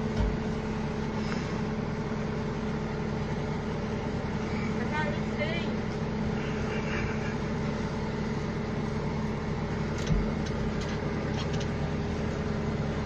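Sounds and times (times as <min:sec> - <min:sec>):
engine humming steadily: 0:00.0 - 0:13.0
dull thump: 0:00.1 - 0:00.5, 0:10.0 - 0:10.5.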